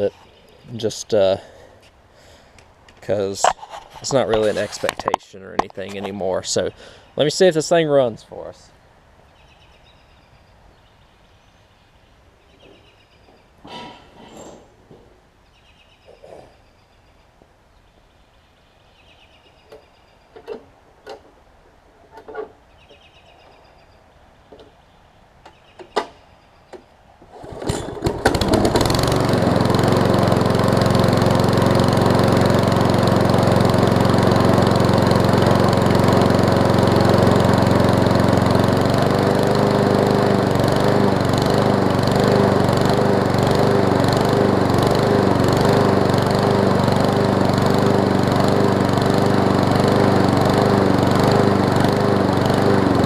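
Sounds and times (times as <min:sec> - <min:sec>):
lawn mower engine running: 0:00.0 - 0:07.4, 0:27.2 - 0:53.0.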